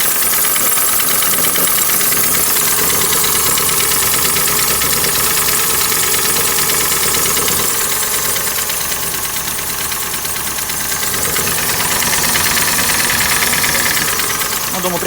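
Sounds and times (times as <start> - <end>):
knocking car engine idling: 0.0 - 15.0.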